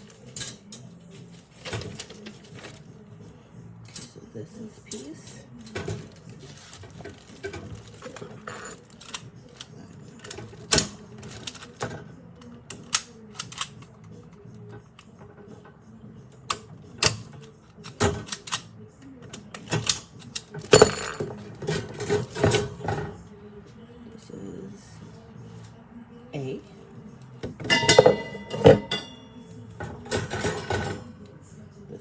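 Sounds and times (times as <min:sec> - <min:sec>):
metal parts clicking and clanking: 0:00.0 - 0:02.9, 0:03.8 - 0:04.2, 0:05.6 - 0:15.5, 0:16.5 - 0:23.2, 0:27.4 - 0:31.2.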